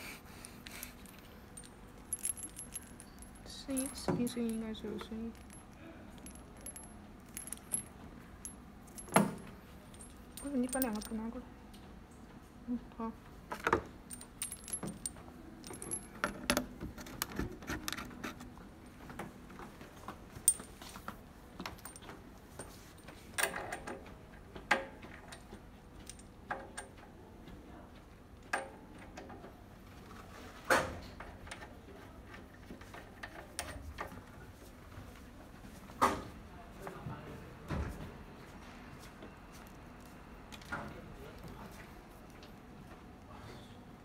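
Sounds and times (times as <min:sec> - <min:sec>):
equipment clicking and clinking: 0:00.6 - 0:11.3, 0:13.5 - 0:18.4.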